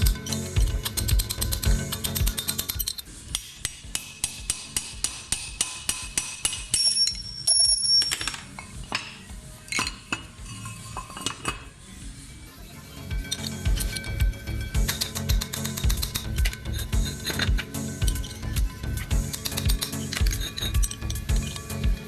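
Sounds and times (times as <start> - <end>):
metal tools clinking: 0.0 - 4.2, 6.5 - 11.8, 13.0 - 21.8
metallic ringing: 0.0 - 11.7
background music: 0.0 - 22.0.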